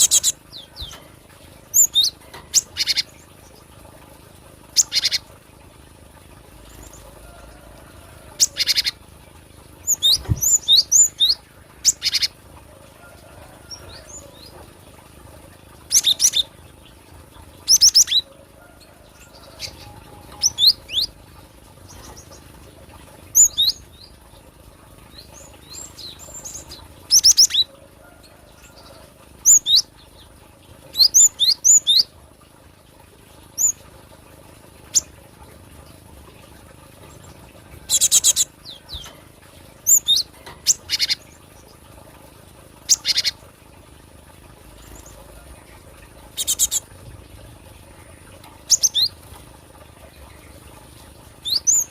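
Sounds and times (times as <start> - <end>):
bird calling with chirps: 1.7 - 3.2, 4.8 - 5.3, 8.4 - 9.0, 39.8 - 41.3, 42.9 - 43.4, 48.7 - 49.2, 51.4 - 51.9.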